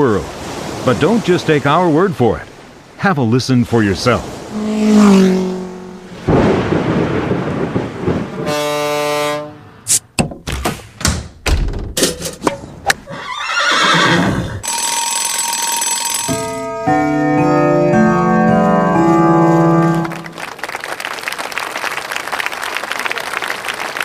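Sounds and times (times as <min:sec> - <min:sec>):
alarm-like ringing tone: 0:14.6 - 0:19.1.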